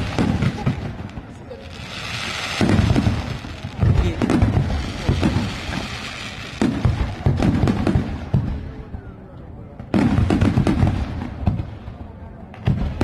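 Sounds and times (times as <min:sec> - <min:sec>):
steady rain hiss: 0:01.6 - 0:06.6.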